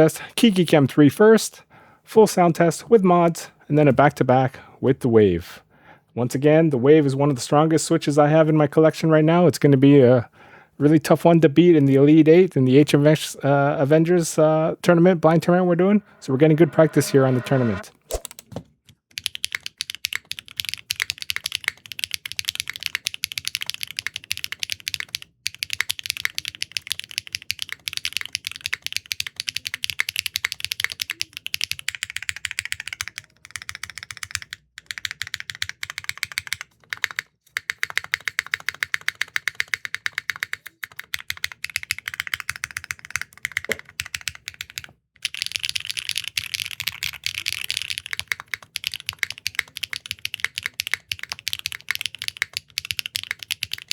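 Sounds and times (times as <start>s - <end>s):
mechanical keyboard typing: 19.1s - 53.9s.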